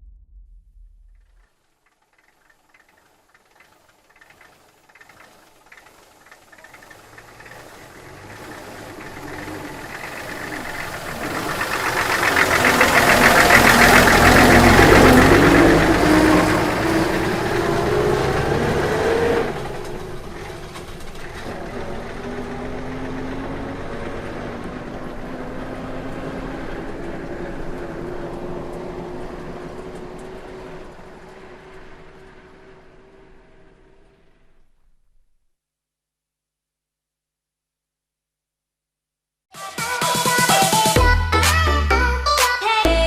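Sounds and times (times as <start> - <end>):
bus driving past: 1.8 - 34.8.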